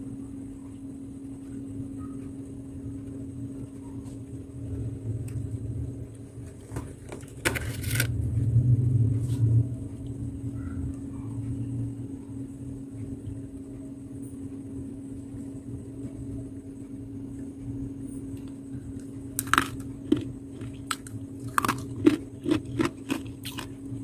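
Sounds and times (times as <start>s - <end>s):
low hum: 0.0s - 24.0s
frost crunching when bitten: 19.4s - 23.8s.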